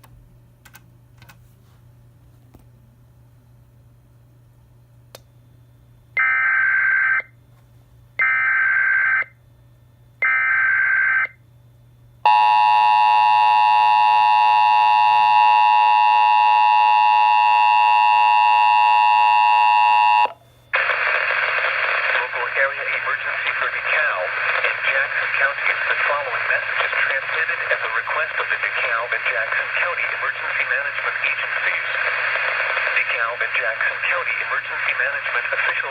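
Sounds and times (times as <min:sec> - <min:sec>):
small click: 0:05.1 - 0:05.3
steady warning alarm tone: 0:12.2 - 0:20.4.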